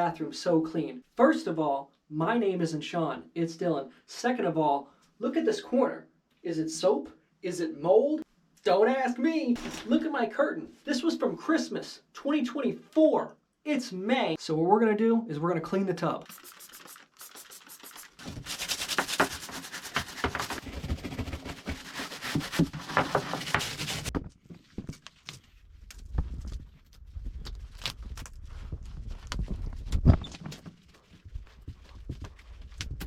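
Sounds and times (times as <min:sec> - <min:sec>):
scrubbing bathtub: 0:16.7 - 0:24.1
knocks and handling sounds: 0:18.2 - 0:26.7.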